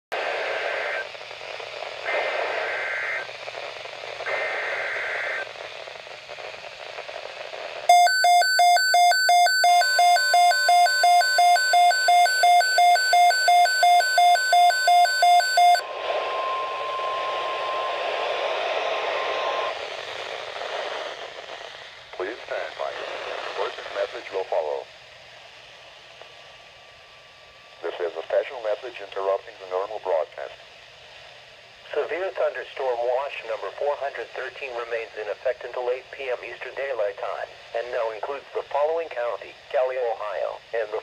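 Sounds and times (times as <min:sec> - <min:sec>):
radio static: 0:00.2 - 0:24.9, 0:27.8 - 0:30.6, 0:31.9 - 0:41.0
digital alert header bursts: 0:07.9 - 0:15.8
pulsing electronic alert beep: 0:07.9 - 0:15.8
steady warning tone: 0:07.9 - 0:19.8.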